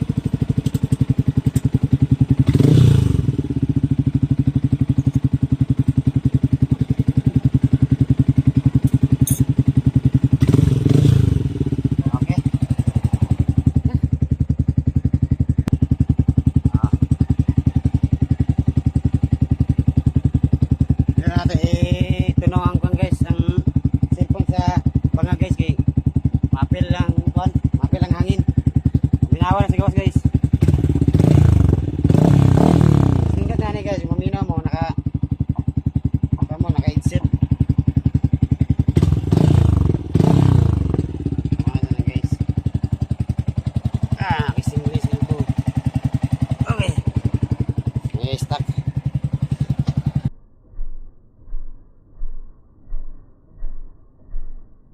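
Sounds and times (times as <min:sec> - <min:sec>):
motorcycle engine idling: 0:00.0 - 0:50.3
sharp click: 0:08.8 - 0:09.6.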